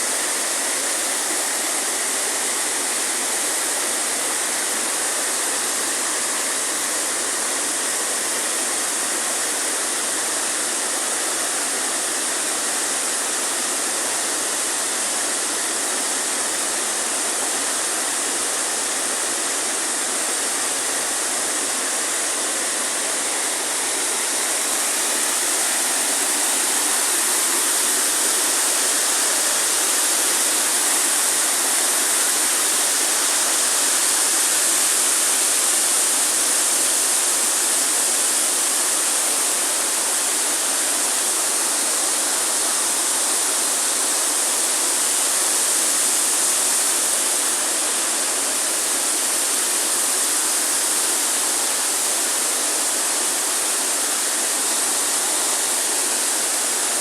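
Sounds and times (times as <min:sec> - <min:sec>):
waterfall rushing: 0:14.6 - 0:57.0.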